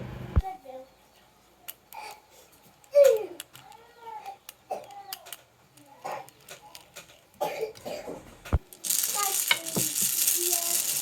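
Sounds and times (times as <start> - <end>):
toy vehicles knocking on wood: 8.8 - 11.0.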